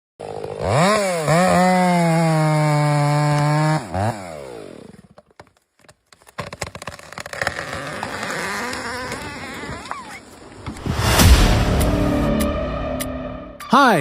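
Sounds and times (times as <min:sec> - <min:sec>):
chainsaw engine revving: 0:00.2 - 0:05.2, 0:07.2 - 0:10.2.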